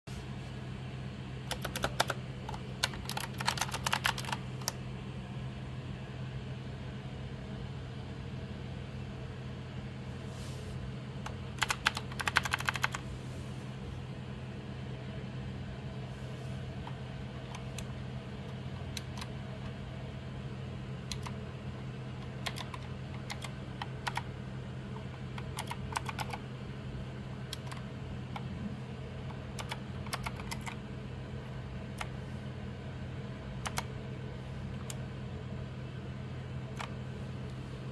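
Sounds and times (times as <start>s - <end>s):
steady low hum: 0.1s - 37.9s
keyboard keys clacking: 1.5s - 4.4s, 11.6s - 13.0s.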